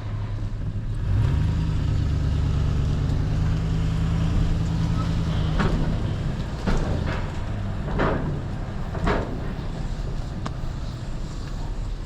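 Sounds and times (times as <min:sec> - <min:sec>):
truck engine running: 0:00.2 - 0:12.0
clunks and rattles: 0:02.9 - 0:12.0.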